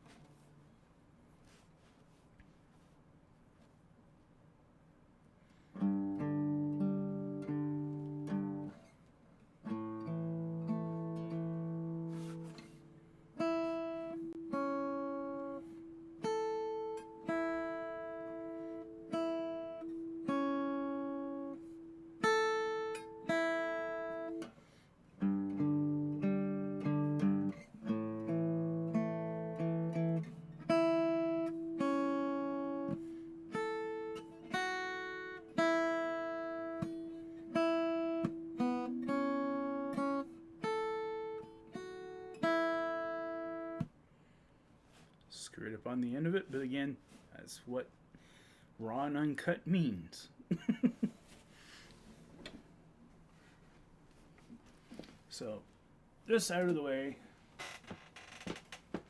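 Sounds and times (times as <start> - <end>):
acoustic guitar played with pick: 5.5 - 44.0.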